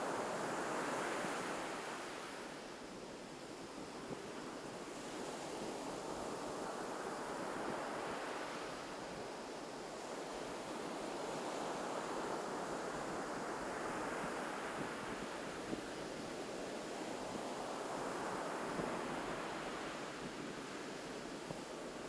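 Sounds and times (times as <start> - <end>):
waves breaking on a beach: 0.0 - 22.0.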